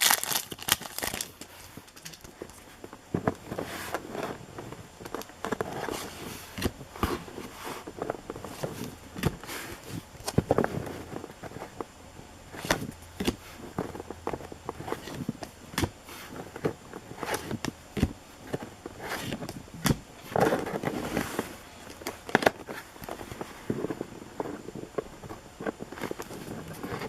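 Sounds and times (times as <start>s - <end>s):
foil wrapper crinkling: 0.0s - 2.7s.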